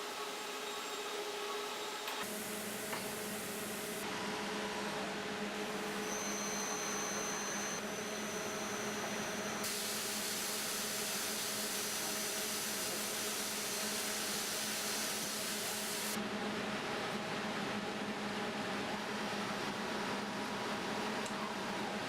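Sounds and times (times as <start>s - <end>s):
plasma cutter humming and hissing: 0.2s - 4.0s, 6.0s - 16.2s
thin high whine: 5.9s - 9.7s.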